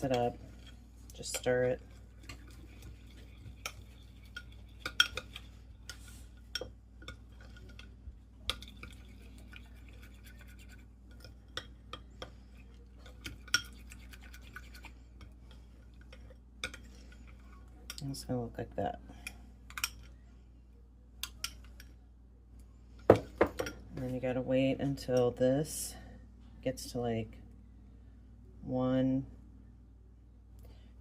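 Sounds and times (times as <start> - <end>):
spoon scraping and clinking in bowl: 0.0 - 7.9, 8.5 - 14.9.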